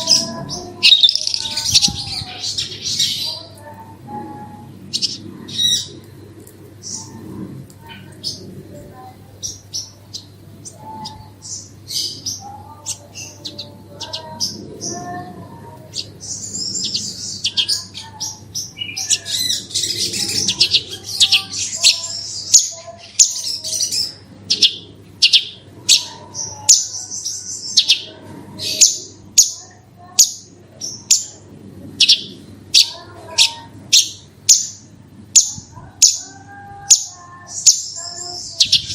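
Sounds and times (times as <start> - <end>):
lark singing: 0.0 - 5.9, 9.5 - 15.2
steady low hum: 0.0 - 38.9.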